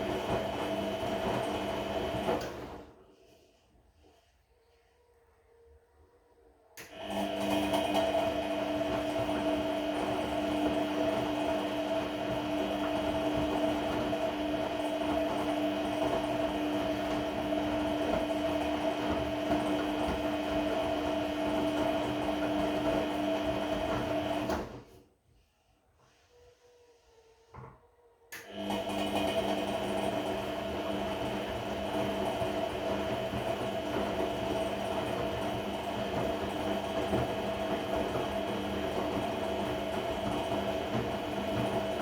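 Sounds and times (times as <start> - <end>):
washing machine drum turning: 31.4 - 42.0.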